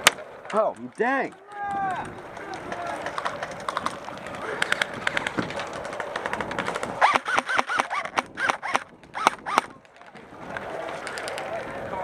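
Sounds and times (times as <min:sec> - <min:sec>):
airsoft gun shots: 0:07.0 - 0:09.8.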